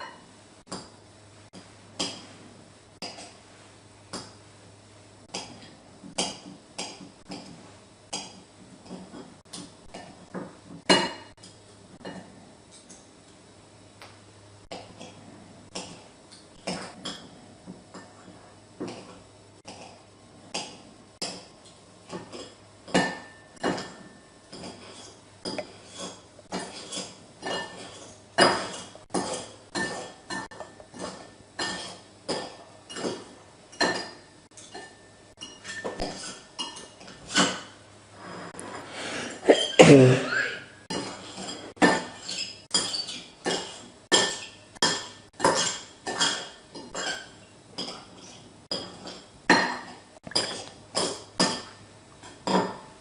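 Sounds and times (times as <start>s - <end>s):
short low burp: 39.4s - 40.7s.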